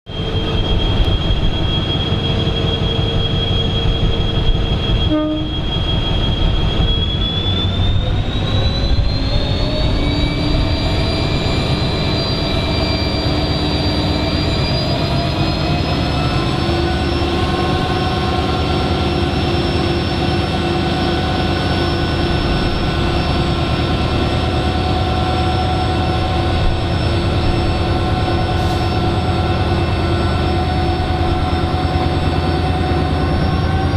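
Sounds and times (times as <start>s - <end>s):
diesel locomotive engine rumble: 0.1s - 33.9s
turbocharger whine: 0.1s - 33.9s.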